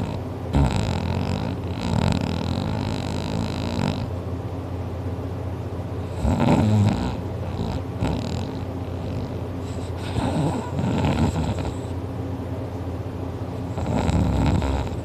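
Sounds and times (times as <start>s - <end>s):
loud snoring: 0.0s - 4.1s, 6.1s - 12.0s, 13.6s - 15.0s.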